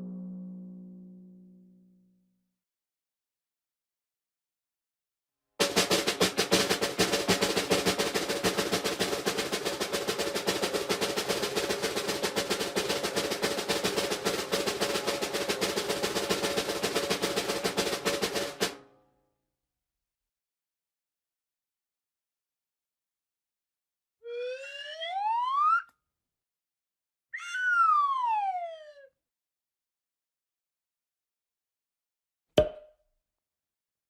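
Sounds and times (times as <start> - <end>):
fast drum roll: 5.6 - 18.8.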